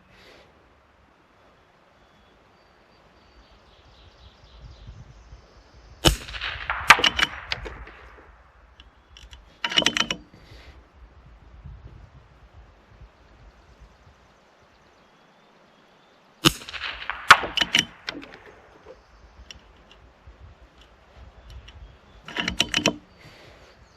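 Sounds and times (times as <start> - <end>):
rifle shot: 6.0 - 9.4, 16.4 - 19.9
rifle bolt metallic clicks: 6.0 - 10.3, 16.4 - 20.1, 20.7 - 23.2.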